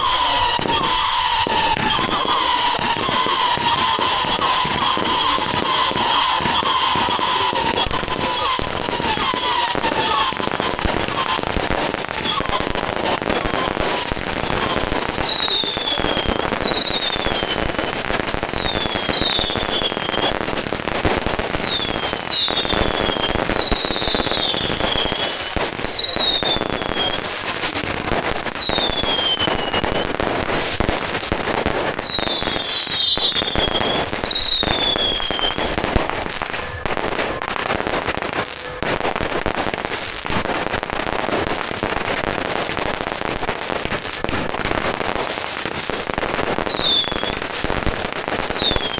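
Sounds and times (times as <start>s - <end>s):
falling firework whistles: 0.0s - 48.9s
fireworks crackling: 0.0s - 48.9s.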